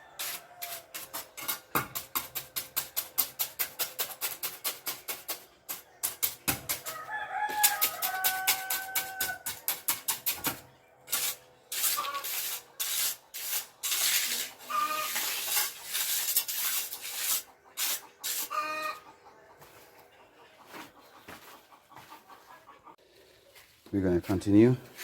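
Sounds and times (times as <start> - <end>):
gritty scraping of concrete: 0.0 - 25.0
chickens clucking: 11.9 - 13.3, 14.4 - 23.6.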